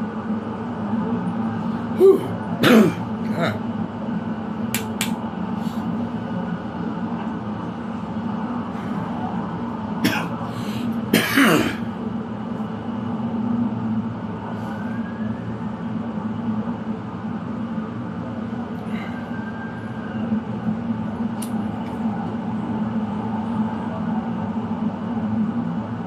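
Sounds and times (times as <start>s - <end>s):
steady low hum: 0.0s - 26.0s
man coughing: 2.0s - 3.6s, 10.0s - 10.3s, 11.1s - 11.8s.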